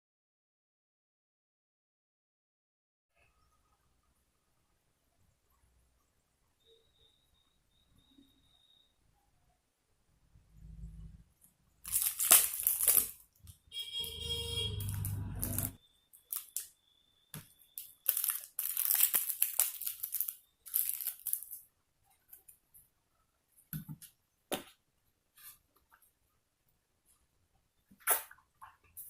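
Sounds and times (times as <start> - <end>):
food packaging crinkling and tearing: 11.8 - 13.3, 14.8 - 16.7, 17.6 - 21.6
short buzzing grating sound: 13.9 - 15.8.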